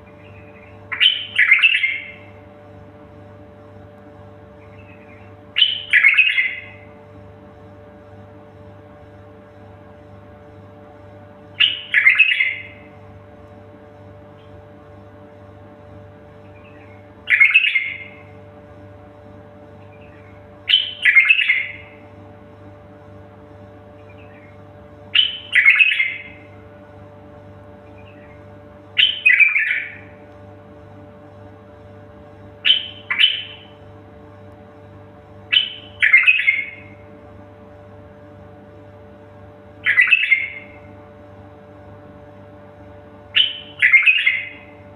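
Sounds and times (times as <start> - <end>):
steady low hum: 0.0 - 44.9
bird harsh calls: 0.1 - 2.3, 4.6 - 6.9, 11.6 - 12.9, 16.4 - 18.3, 19.9 - 22.0, 24.0 - 26.5, 29.0 - 30.1, 32.6 - 33.7, 35.5 - 37.0, 39.8 - 40.8, 43.4 - 44.7
songbird warbling: 0.1 - 2.4, 4.6 - 6.8, 11.6 - 12.8, 16.4 - 18.3, 19.9 - 22.0, 24.0 - 26.5, 29.0 - 30.1, 32.6 - 33.7, 35.5 - 37.0, 39.8 - 40.8, 43.4 - 44.7.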